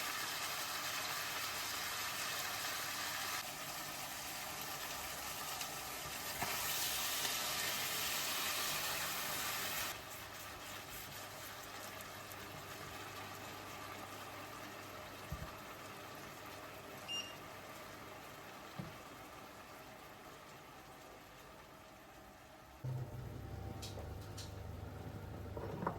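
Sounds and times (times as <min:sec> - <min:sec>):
small knocks: 0:25.5 - 0:25.9.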